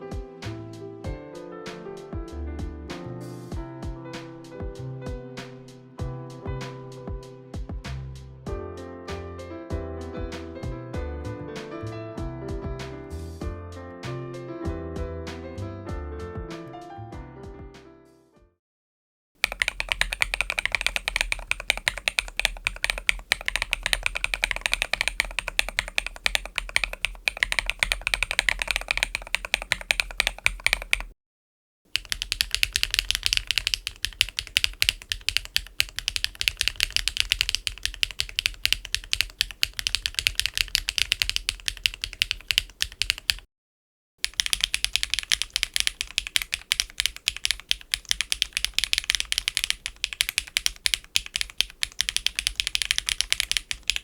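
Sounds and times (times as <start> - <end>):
mechanical keyboard typing: 19.4 - 31.1, 31.9 - 43.5, 44.2 - 54.0.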